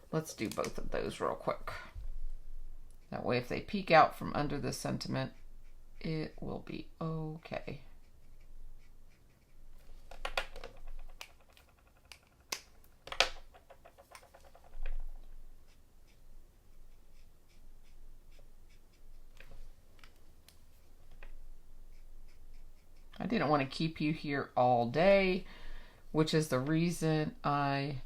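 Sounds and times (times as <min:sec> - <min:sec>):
marker scratching on card: 0:08.0 - 0:09.9, 0:15.6 - 0:19.3, 0:21.9 - 0:23.2.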